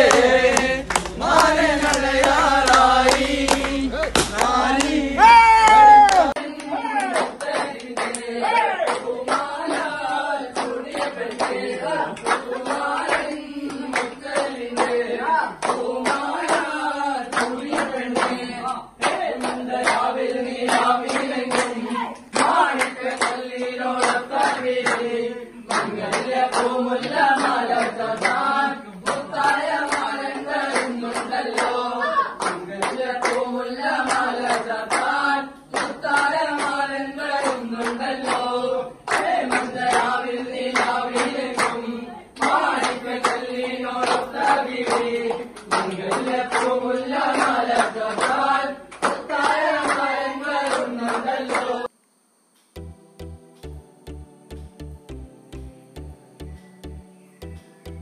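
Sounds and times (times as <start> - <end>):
group of voices singing: 0.0 - 51.9
rhythmic hand clapping: 0.0 - 51.9, 52.8 - 58.0.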